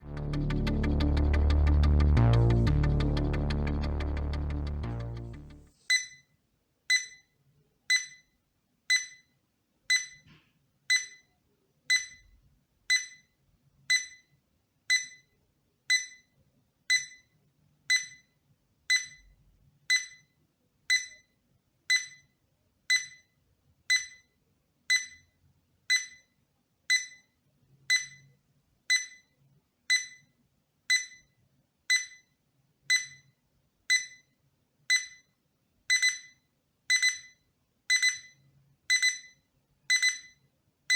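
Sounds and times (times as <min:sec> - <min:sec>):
alarm clock beeping: 0:05.9 - 0:06.3, 0:06.9 - 0:07.3, 0:07.9 - 0:08.3, 0:08.9 - 0:09.3, 0:09.9 - 0:10.2, 0:10.9 - 0:11.3, 0:11.9 - 0:12.3, 0:12.9 - 0:13.3, 0:13.9 - 0:14.3, 0:14.9 - 0:15.3, 0:15.9 - 0:16.3, 0:16.9 - 0:17.3, 0:17.9 - 0:18.3, 0:18.9 - 0:19.3, 0:19.9 - 0:20.3, 0:20.9 - 0:21.3, 0:21.9 - 0:22.3, 0:22.9 - 0:23.3, 0:23.9 - 0:24.3, 0:24.9 - 0:25.3, 0:25.9 - 0:26.3, 0:26.9 - 0:27.3, 0:27.9 - 0:28.3, 0:28.9 - 0:29.3, 0:29.9 - 0:30.3, 0:30.9 - 0:31.3, 0:31.9 - 0:32.3, 0:32.9 - 0:33.3, 0:33.9 - 0:34.3, 0:34.9 - 0:35.3, 0:35.9 - 0:40.4.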